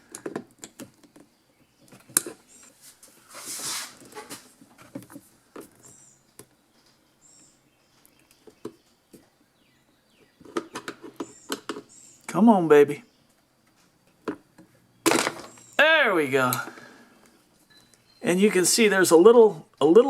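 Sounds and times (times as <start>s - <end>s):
soft hiss: 2.5s - 8.2s.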